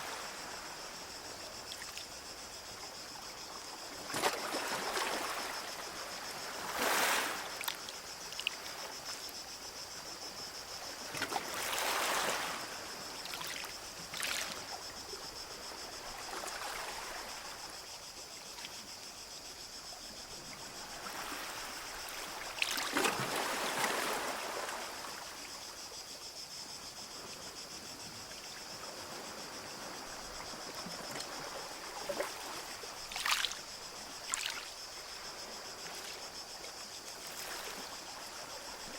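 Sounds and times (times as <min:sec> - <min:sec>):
small waves washing onto beach: 0:03.9 - 0:09.3.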